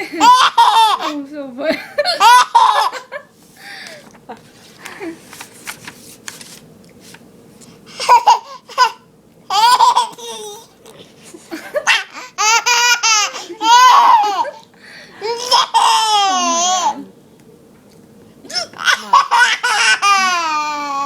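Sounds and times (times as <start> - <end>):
young child laughing: 0.0 - 1.2, 11.3 - 14.6, 18.5 - 21.0.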